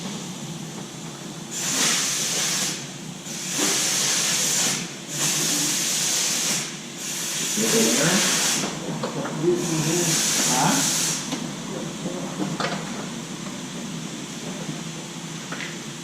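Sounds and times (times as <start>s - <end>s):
compressed air hissing: 1.4s - 8.8s, 9.5s - 11.4s.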